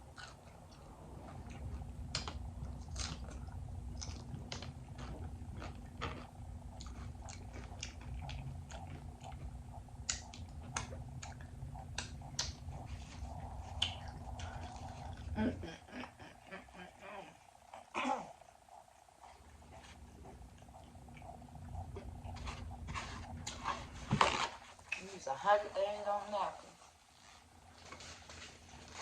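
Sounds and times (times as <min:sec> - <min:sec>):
person chewing crunchy chips: 0:00.0 - 0:15.7
low steady hum: 0:00.0 - 0:29.0
wet mouth clicks: 0:02.1 - 0:15.4, 0:17.7 - 0:25.0.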